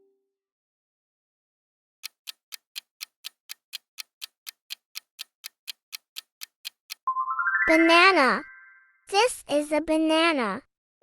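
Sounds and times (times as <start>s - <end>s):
clock ticking: 2.0s - 7.1s.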